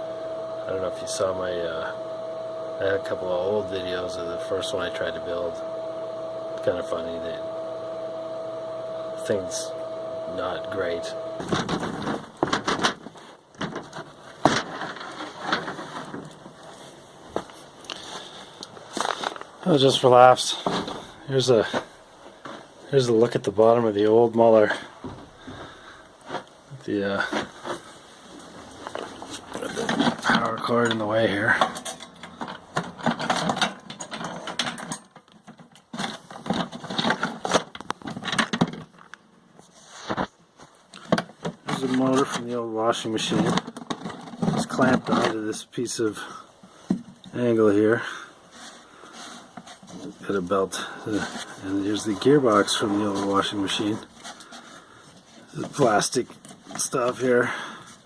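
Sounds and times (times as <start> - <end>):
handling knocks and clatters: 11.4 - 19.6, 20.5 - 22.7, 27.2 - 39.2, 43.2 - 45.4.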